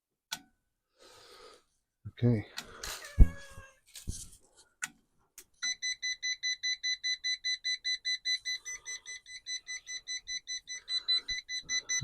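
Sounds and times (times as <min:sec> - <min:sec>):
rapid high beeps: 0:05.6 - 0:12.0.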